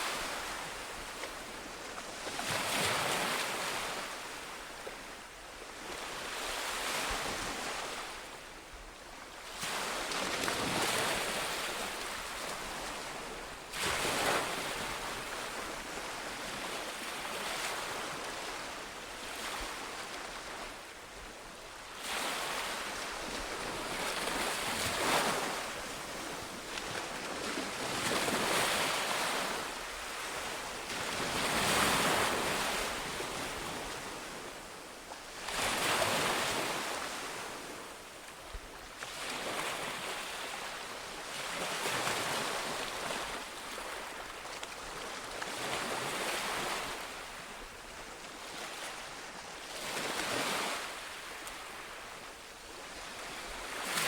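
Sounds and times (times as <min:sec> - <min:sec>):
sea waves breaking on shore: 0:21.7 - 0:54.0.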